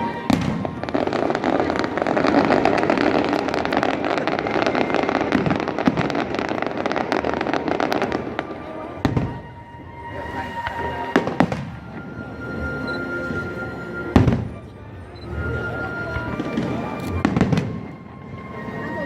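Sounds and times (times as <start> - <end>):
fireworks crackling: 0.0 - 19.0.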